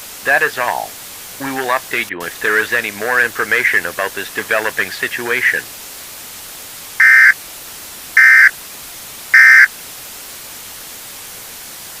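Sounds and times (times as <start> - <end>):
static hiss: 0.0 - 12.0
harsh two-tone data bursts: 7.0 - 7.4, 8.2 - 8.5, 9.4 - 9.7.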